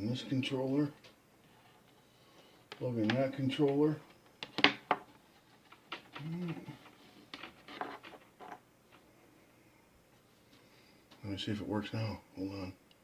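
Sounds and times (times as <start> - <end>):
person murmuring: 6.1 - 6.9.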